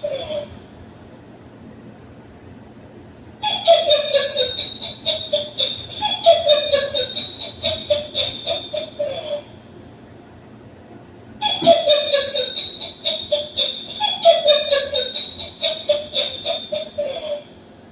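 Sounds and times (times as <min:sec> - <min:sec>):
electronic toy laughing clip: 0:00.0 - 0:00.6, 0:03.4 - 0:09.6, 0:11.4 - 0:17.6.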